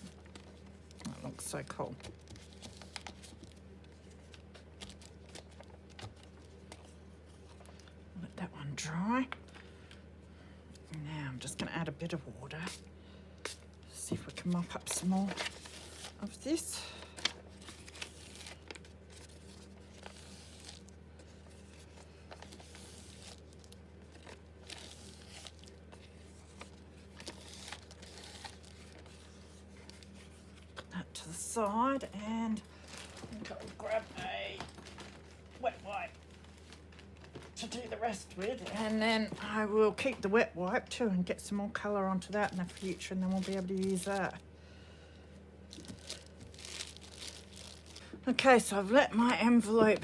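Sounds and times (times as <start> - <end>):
paper rustling and crinkling: 0.0 - 8.0, 14.2 - 30.9, 32.7 - 40.2, 42.2 - 44.4, 45.7 - 48.2
steady low hum: 0.0 - 50.0.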